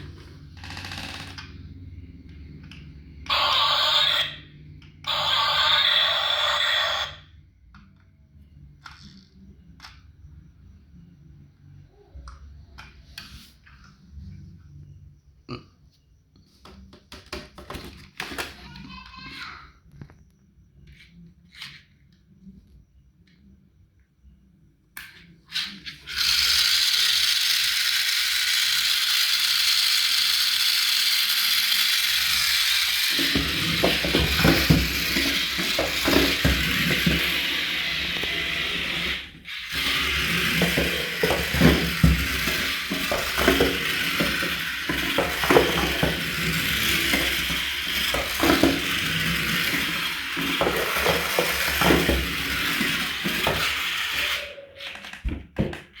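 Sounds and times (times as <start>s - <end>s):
toy gears whirring: 0.0s - 8.0s, 8.6s - 10.2s, 17.6s - 19.6s, 20.8s - 22.3s, 25.0s - 56.0s
plastic gears clicking rattle: 25.0s - 55.3s.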